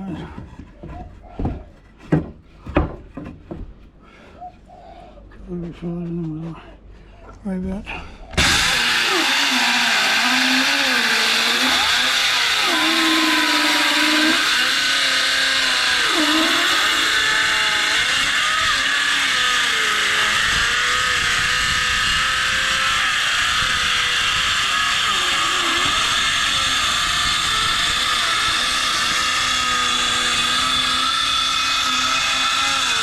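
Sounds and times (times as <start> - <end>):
electric saw cutting wood: 8.4 - 33.0.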